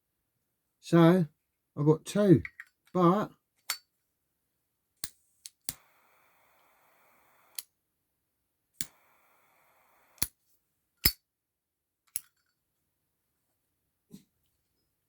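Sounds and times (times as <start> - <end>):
faint gas hiss: 5.0 - 7.7, 8.8 - 10.4
lighter metal clicks: 7.4 - 7.7, 8.8 - 9.2, 10.1 - 10.4.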